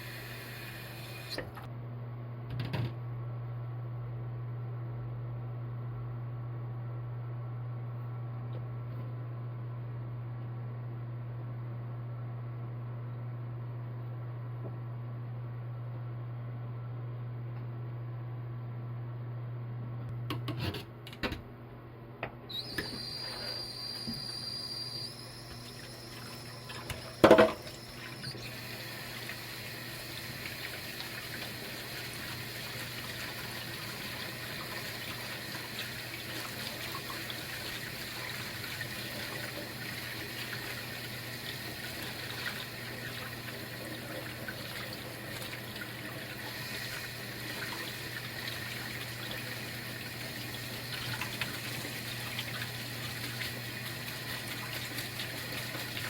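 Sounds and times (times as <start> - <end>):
water running from a tap: 0.0 - 1.5, 22.6 - 56.0.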